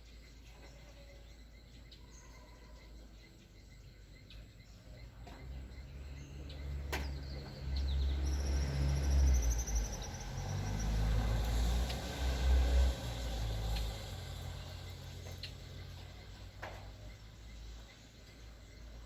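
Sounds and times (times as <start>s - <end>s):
road vehicle passing by: 5.0s - 19.0s.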